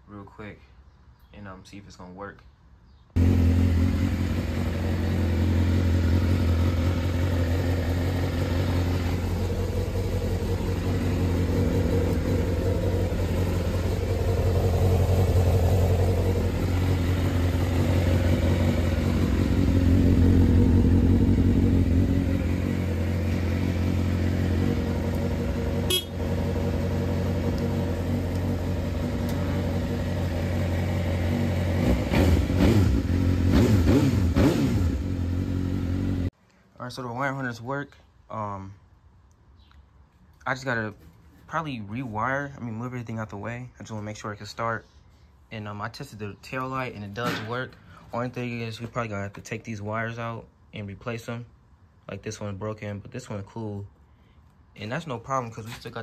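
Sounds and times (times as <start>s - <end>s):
motorcycle engine idling: 3.2s - 36.3s.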